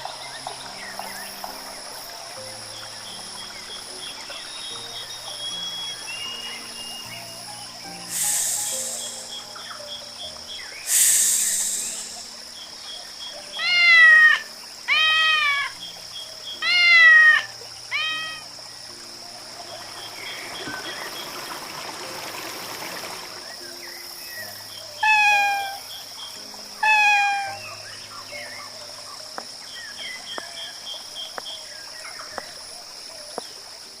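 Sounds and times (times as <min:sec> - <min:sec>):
soft hiss: 0:00.0 - 0:13.5
cat meowing: 0:13.6 - 0:15.7, 0:16.6 - 0:18.5, 0:25.0 - 0:25.8, 0:26.8 - 0:27.6.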